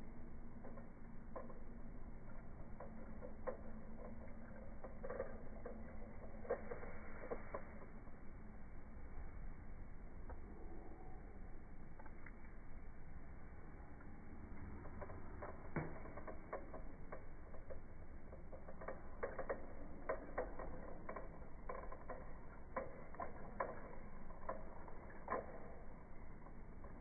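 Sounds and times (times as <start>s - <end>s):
plastic toy car clicking and rattling: 2.8s - 7.8s, 14.7s - 25.8s.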